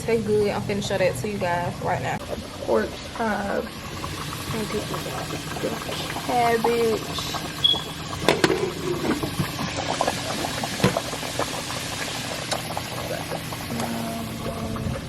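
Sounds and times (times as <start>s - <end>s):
meat sizzling in oil: 2.2s - 13.8s.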